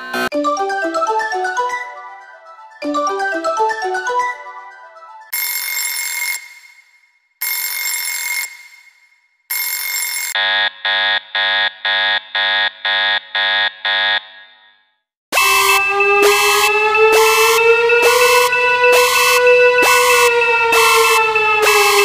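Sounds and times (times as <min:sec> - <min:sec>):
chiming mallet-like notes: 0:00.4 - 0:05.3
harsh pitched alarm beeps: 0:15.3 - 0:22.0.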